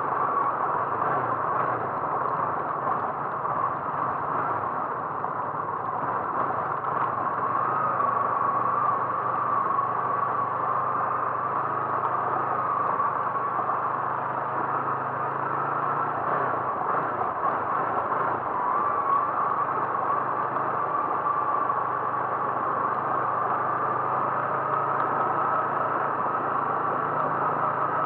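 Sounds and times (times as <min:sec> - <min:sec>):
road noise: 0:00.0 - 0:28.0
vehicle engine hum: 0:00.0 - 0:28.0.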